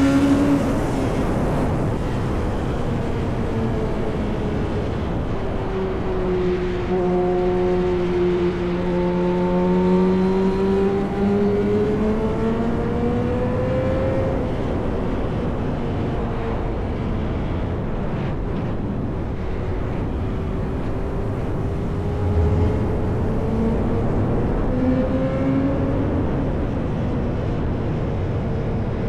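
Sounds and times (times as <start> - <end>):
tyre road noise: 0.0 - 29.0
wind rushing: 18.2 - 26.6
motorcycle engine revving: 20.4 - 26.1.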